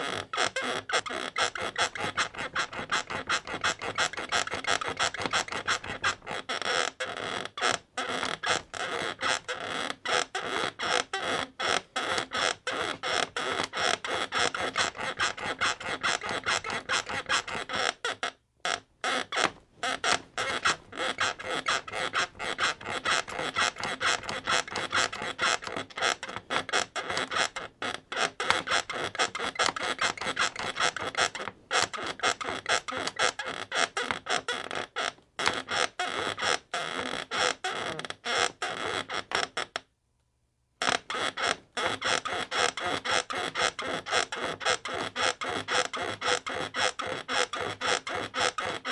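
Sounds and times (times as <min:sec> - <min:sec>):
bed creaking: 0:00.0 - 0:39.6.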